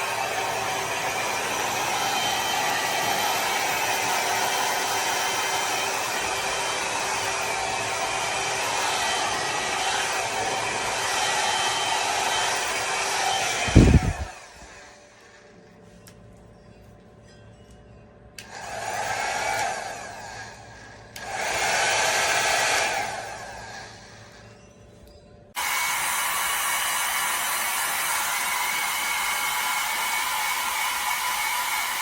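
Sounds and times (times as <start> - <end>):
hair dryer blowing whir: 0.0 - 15.4, 18.4 - 24.5, 25.6 - 32.0.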